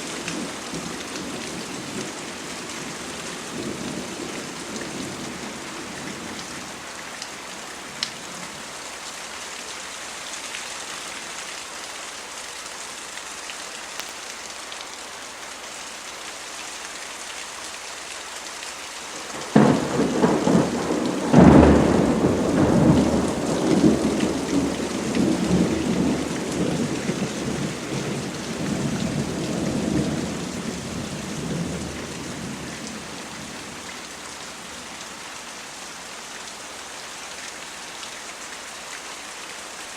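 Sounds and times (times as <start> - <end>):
steady rain falling: 0.0 - 39.9
rolling thunder rumble: 19.4 - 33.8.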